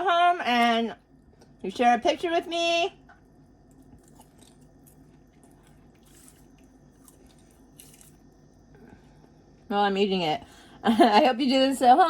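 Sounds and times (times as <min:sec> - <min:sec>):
chewing popcorn: 0:03.2 - 0:08.5.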